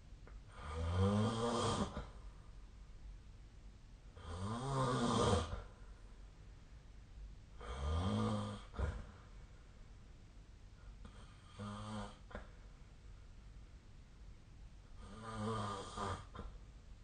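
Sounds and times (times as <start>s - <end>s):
person snoring: 0.5s - 2.1s, 4.2s - 5.7s, 7.6s - 9.1s, 11.0s - 12.4s, 15.0s - 16.5s.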